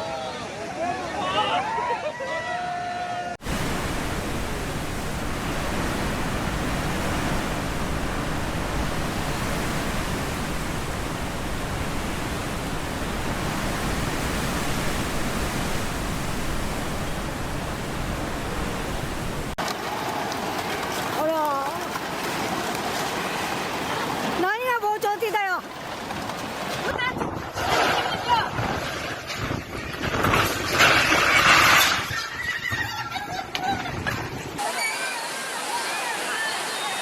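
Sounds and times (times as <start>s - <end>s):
loud steady rushing noise: 3.4s - 19.6s.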